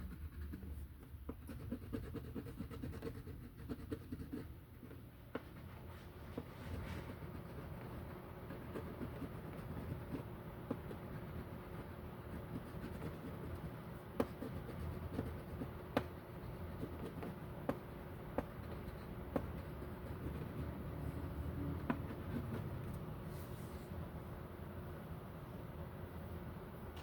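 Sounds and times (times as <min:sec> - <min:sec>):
steady low hum: 0:00.0 - 0:27.0
coloring strokes on paper: 0:05.5 - 0:17.4.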